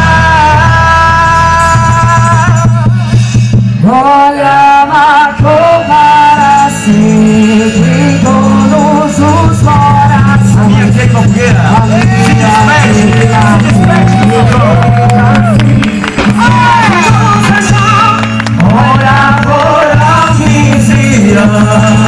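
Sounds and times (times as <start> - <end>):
amplified music with bass: 0.0 - 22.0
person singing: 0.0 - 22.0
rattle-like percussion: 6.6 - 22.0.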